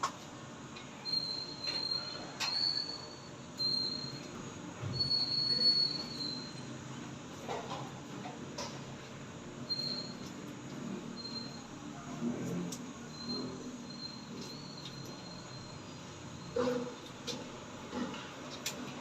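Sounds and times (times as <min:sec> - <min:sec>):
fire alarm high-pitched beeps: 0:01.0 - 0:04.3, 0:04.9 - 0:06.7, 0:13.1 - 0:16.6.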